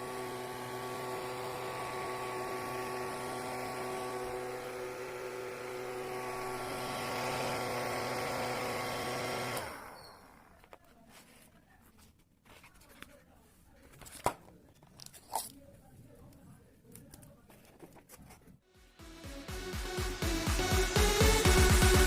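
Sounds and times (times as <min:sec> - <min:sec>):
small motor and fan running: 0:00.0 - 0:10.7.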